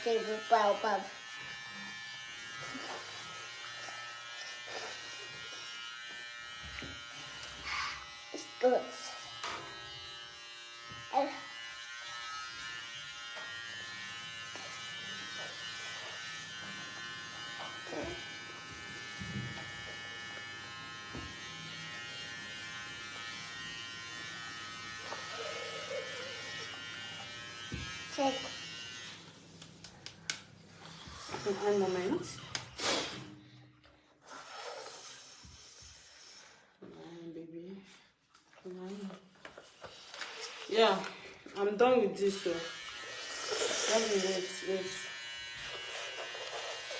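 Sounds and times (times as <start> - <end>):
electric hair clipper buzzing: 0.0 - 33.3, 40.1 - 46.9.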